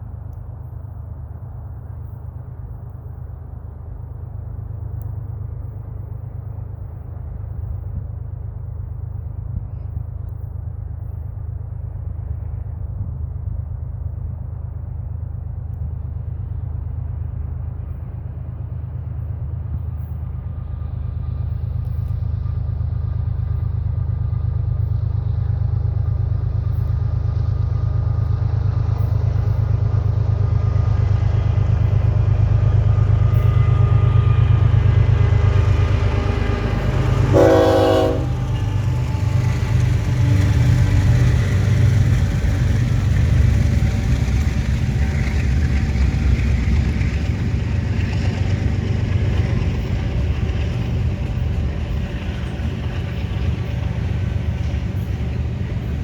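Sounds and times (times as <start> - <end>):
freight train engine rumble: 0.0 - 56.0
locomotive horn blast: 33.3 - 39.1.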